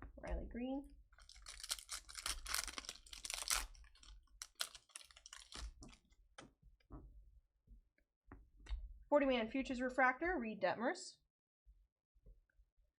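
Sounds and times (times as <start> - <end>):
trading cards clicking and rustling: 1.2 - 6.0.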